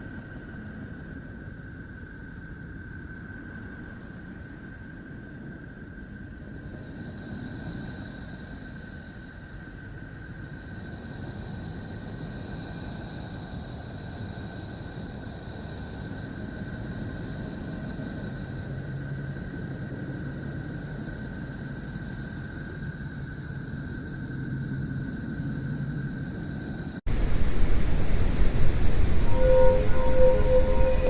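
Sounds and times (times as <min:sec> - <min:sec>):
faint high tones: 0:27.1 - 0:31.0
low rumbling drone: 0:27.1 - 0:31.0.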